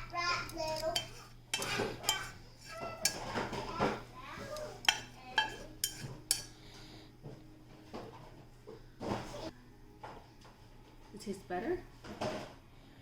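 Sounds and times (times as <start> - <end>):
utensils clinking against bowl: 0.4 - 6.6.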